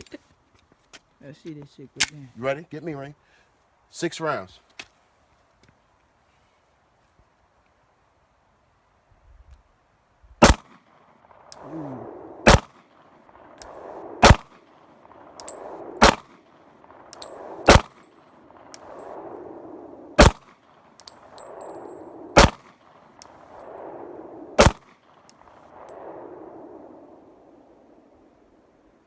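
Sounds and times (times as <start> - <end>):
pistol shots: 10.4 - 10.8, 12.4 - 12.8, 13.4 - 19.1, 20.2 - 20.6, 22.4 - 22.7, 24.6 - 25.0.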